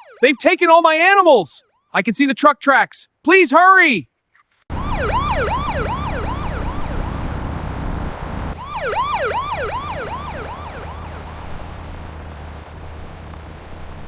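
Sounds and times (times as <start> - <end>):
police siren yelping: 0.0 - 0.5, 4.7 - 14.0
low engine rumble: 4.7 - 14.0.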